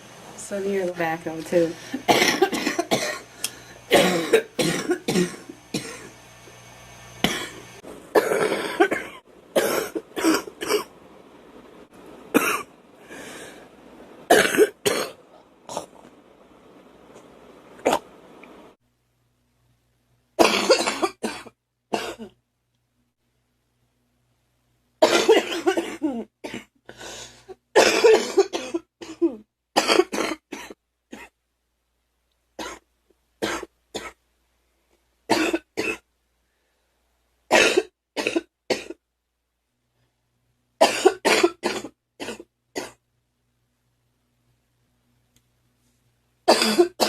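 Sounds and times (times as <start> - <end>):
girl coughing: 2.0 - 3.3, 3.9 - 6.1, 7.2 - 7.6, 8.2 - 10.9, 12.4 - 12.7, 14.3 - 15.9, 20.4 - 22.3, 25.0 - 26.7, 27.8 - 31.3, 35.3 - 36.0, 37.5 - 39.0, 40.8 - 43.0, 46.5 - 47.0.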